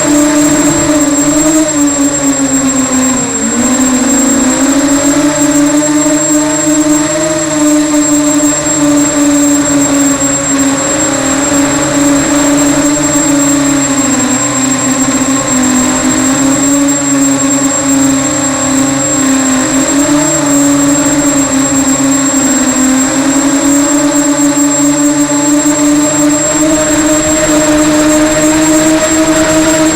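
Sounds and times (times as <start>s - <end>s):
drone motors buzzing: 0.0s - 29.9s
thin high whine: 0.0s - 29.9s.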